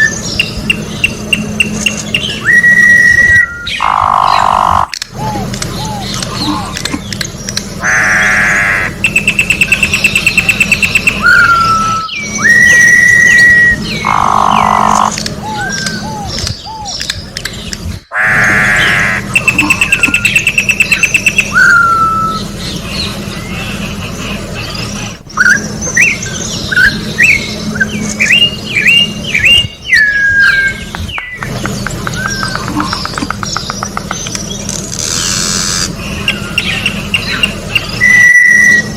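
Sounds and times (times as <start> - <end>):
fast pulsing trill: 0.0 - 6.0
bird whistled song: 0.0 - 6.5, 9.0 - 17.8, 18.5 - 34.7, 35.9 - 38.9
harsh bird calls: 0.0 - 38.9
steady low hum: 0.0 - 38.9.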